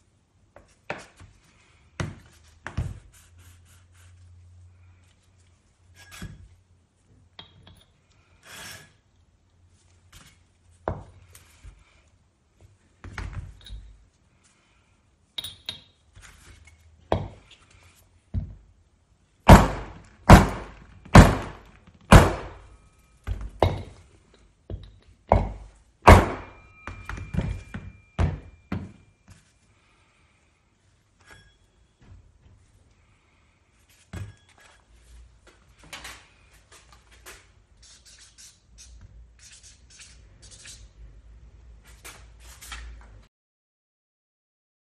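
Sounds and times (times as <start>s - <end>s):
sharp metallic knocks: 25.3s - 28.9s.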